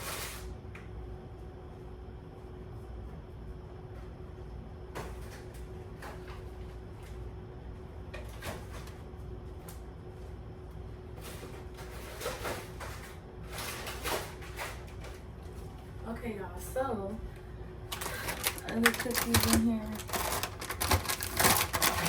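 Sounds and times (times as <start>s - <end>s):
steady low hum: 0.0s - 22.0s
groceries rustling: 11.0s - 15.9s, 17.9s - 22.0s.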